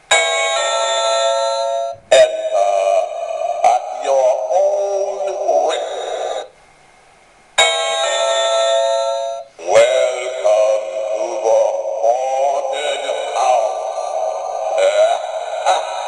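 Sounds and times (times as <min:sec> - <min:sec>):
electronic novelty doorbell tones: 0:07.6 - 0:09.5.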